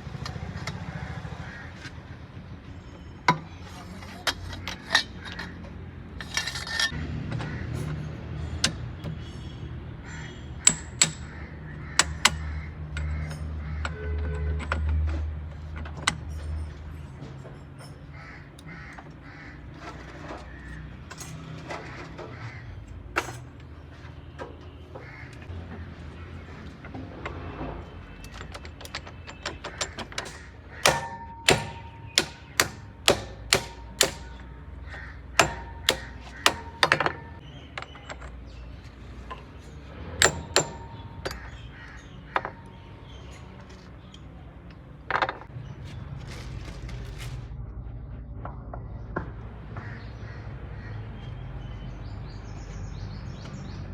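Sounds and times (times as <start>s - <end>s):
sharp knocks: 28.3s - 37.4s, 40.2s - 42.7s.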